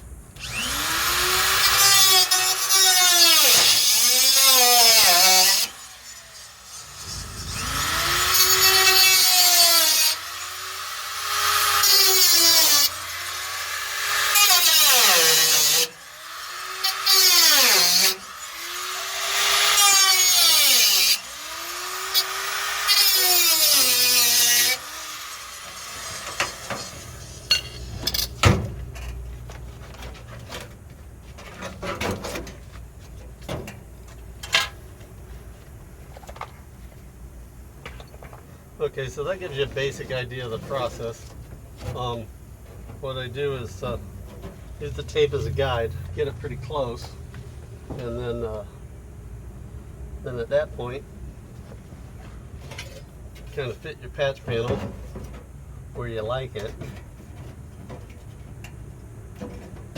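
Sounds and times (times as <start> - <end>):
power tool cutting sheet steel: 0.4 - 28.3.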